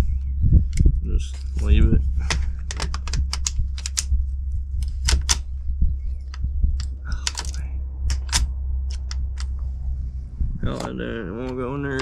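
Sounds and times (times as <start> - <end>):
rifle action metallic clicks: 2.3 - 4.1, 4.8 - 5.5, 6.3 - 9.6.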